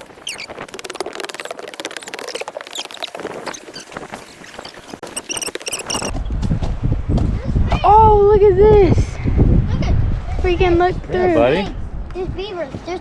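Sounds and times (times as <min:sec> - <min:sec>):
dense rapid crackle: 0:00.0 - 0:06.1
small birds chirping: 0:00.0 - 0:06.1.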